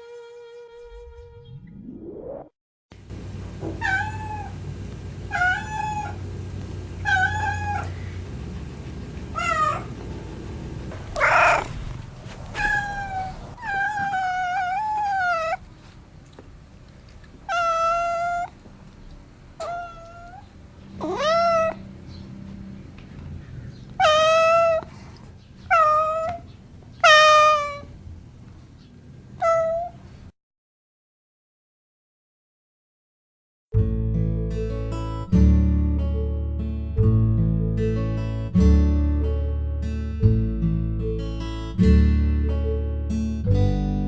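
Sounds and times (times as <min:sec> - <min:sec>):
cat meowing: 0:03.8 - 0:04.6, 0:05.3 - 0:06.2, 0:07.0 - 0:08.0, 0:09.3 - 0:10.0, 0:11.1 - 0:11.8, 0:12.5 - 0:15.6, 0:17.5 - 0:18.6, 0:19.6 - 0:21.8, 0:24.0 - 0:24.9, 0:25.7 - 0:27.9, 0:29.4 - 0:30.0.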